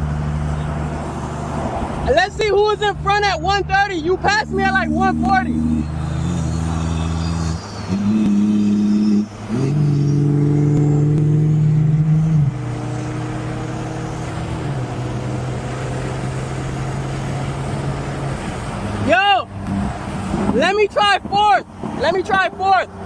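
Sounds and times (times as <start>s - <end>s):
car engine running: 0.0s - 20.6s.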